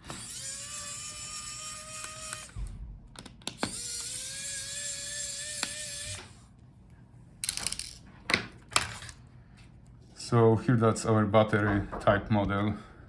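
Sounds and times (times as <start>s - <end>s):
electric screwdriver motor whine: 0.0s - 2.7s, 3.6s - 6.4s
clicks of screws being handled: 7.4s - 8.0s.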